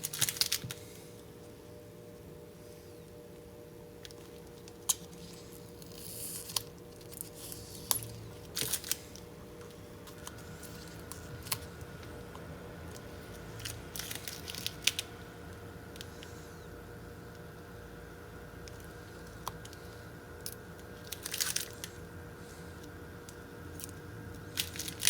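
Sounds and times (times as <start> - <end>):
plastic film scraping and rustling: 0.0 - 1.0, 4.3 - 9.3, 12.9 - 15.2, 18.7 - 22.6, 23.8 - 25.0
steady hum: 0.0 - 25.0.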